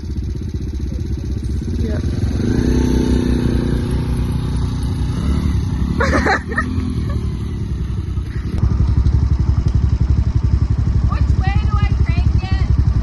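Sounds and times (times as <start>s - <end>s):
quad engine running: 0.0s - 13.0s.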